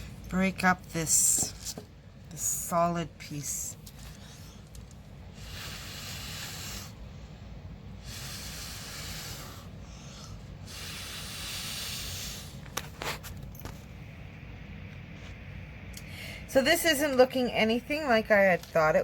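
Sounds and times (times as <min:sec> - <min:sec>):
air blowing hiss: 0:05.3 - 0:07.0, 0:08.0 - 0:12.6.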